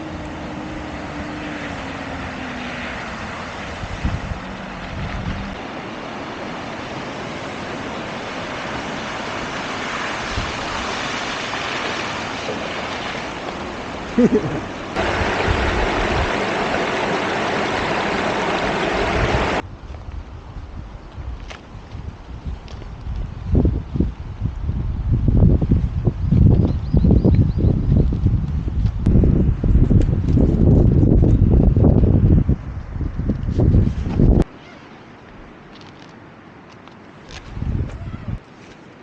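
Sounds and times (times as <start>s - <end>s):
river water rushing: 0.0s - 19.6s
wind buffeting microphone: 3.0s - 5.6s, 14.9s - 34.5s, 37.3s - 38.4s.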